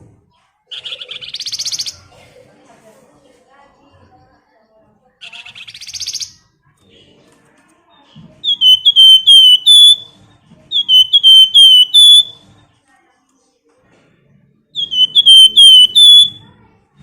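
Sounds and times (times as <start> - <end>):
songbird whistled notes: 5.3 - 6.4, 8.4 - 12.4, 14.8 - 16.4
songbird buzzy trill: 5.5 - 6.3, 8.4 - 10.1, 10.7 - 12.4, 14.8 - 16.4.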